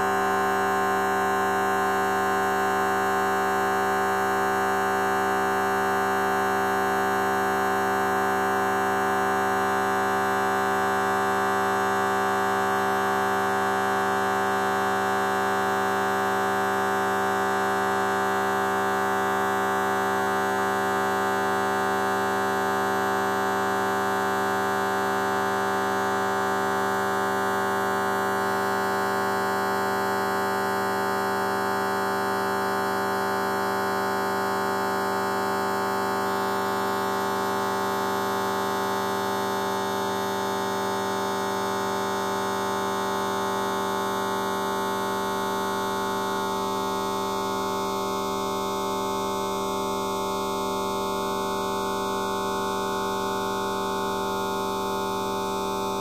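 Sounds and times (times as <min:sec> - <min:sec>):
buzzing drone of held tones: 0:00.0 - 0:28.3, 0:35.2 - 0:56.0.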